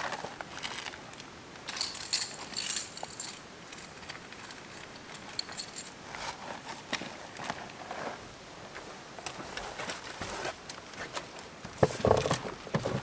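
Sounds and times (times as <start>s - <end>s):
small hard objects jingling: 1.6s - 6.2s.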